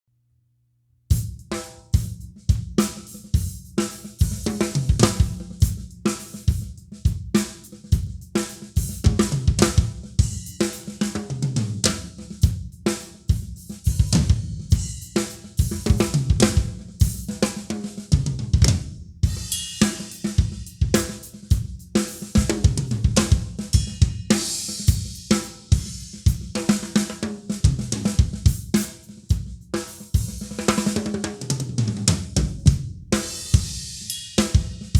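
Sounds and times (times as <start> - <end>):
bass drum: 1.1 - 10.6, 11.6 - 26.7, 27.7 - 29.6, 31.8 - 34.9
drum kit playing a groove: 1.1 - 34.9
snare drum: 1.3 - 34.9.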